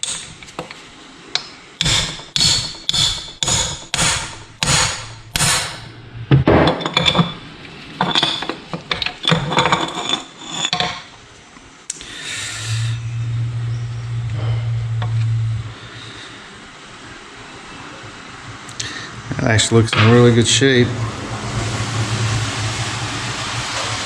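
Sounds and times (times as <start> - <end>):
hammer blows on metal: 0.0 - 0.4, 1.8 - 6.0
metal taps and clinks: 6.6 - 7.4.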